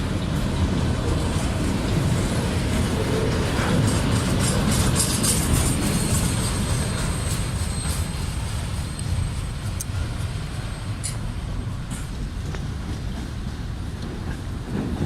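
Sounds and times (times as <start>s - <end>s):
high rattles and squeaks: 3.8s - 9.4s.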